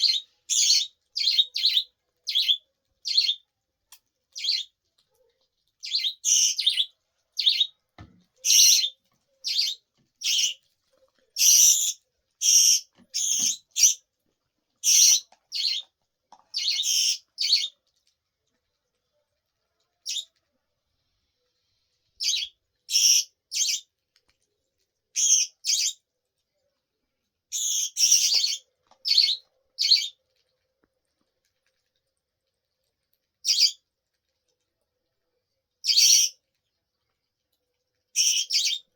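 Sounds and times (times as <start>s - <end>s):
budgerigar chirping: 0.0s - 3.4s, 4.4s - 4.7s, 5.8s - 7.7s, 8.4s - 10.6s, 11.4s - 14.0s, 14.8s - 15.8s, 16.6s - 17.7s, 38.2s - 38.8s.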